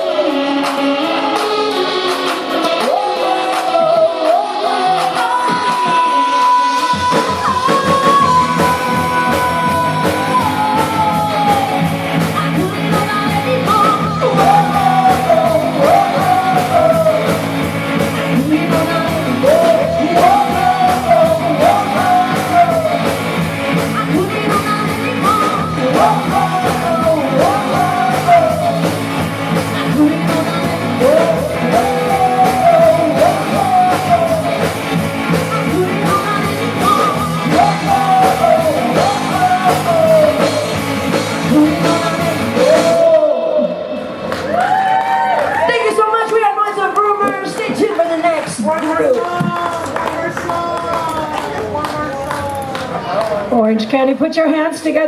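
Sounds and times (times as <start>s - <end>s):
rock drums and bass: 0.0s - 43.4s
lead singer singing: 0.0s - 48.5s.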